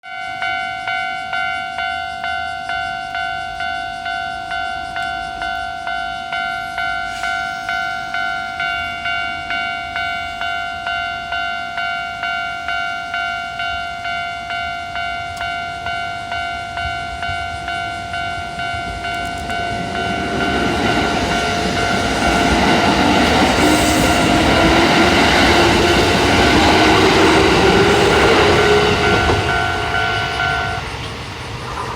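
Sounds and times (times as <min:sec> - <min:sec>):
level crossing alarm ringing: 0:00.0 - 0:31.1
wheels on rails: 0:00.1 - 0:31.9
electric train motors whining: 0:00.4 - 0:31.9.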